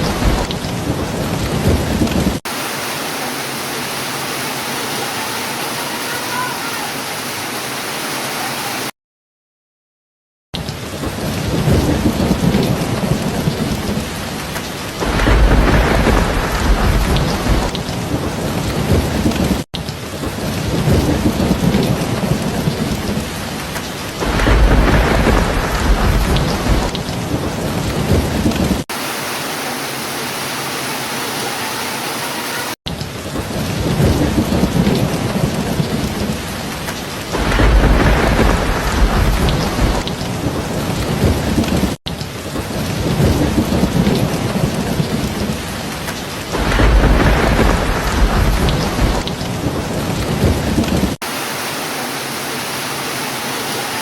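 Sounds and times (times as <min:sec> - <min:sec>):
thunder rolling: 0:00.0 - 0:02.4, 0:10.8 - 0:19.6, 0:20.2 - 0:28.9, 0:33.1 - 0:51.2
heavy rain: 0:00.0 - 0:09.0, 0:10.6 - 0:54.0.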